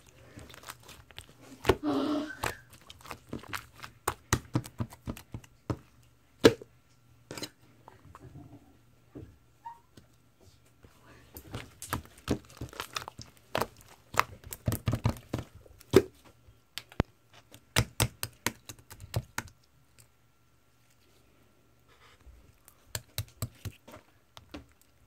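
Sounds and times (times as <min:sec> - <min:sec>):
slime clicking and popping: 0:22.8 - 0:23.8.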